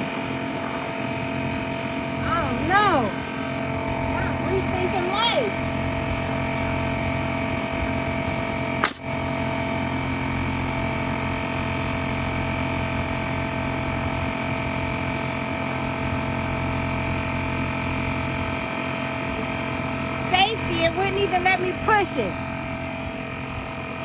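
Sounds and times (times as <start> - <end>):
air compressor humming: 0.0 - 24.0
nail gun firing: 8.8 - 9.1.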